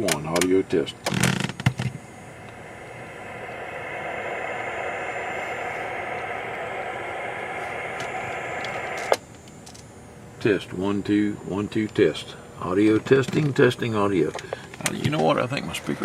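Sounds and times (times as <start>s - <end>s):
radio static hiss: 0.0s - 9.3s
radio mic click: 0.1s - 9.2s.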